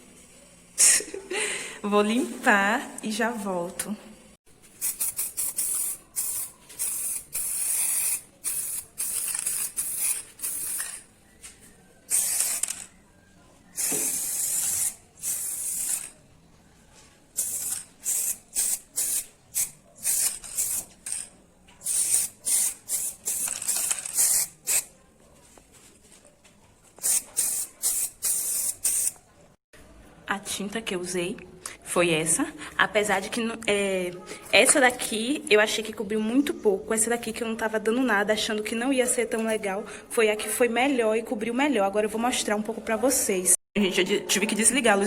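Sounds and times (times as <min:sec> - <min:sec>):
spray paint can hissing: 0:04.7 - 0:11.1, 0:12.1 - 0:12.9, 0:13.8 - 0:16.2, 0:17.4 - 0:21.2, 0:21.8 - 0:24.9, 0:27.0 - 0:29.2.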